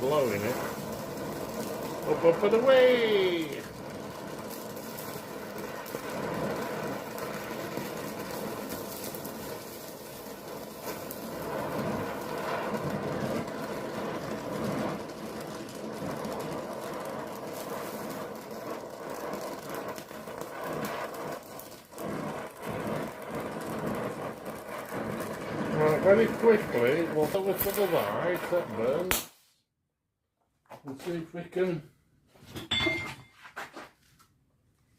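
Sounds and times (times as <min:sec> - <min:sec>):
welding arc crackling: 0:00.0 - 0:29.3.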